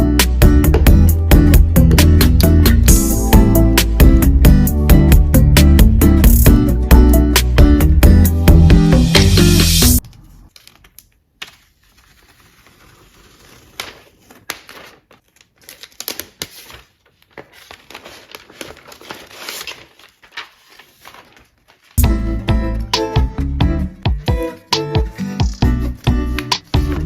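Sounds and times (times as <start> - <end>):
paper or plastic crinkling and tearing: 10.0 - 22.0.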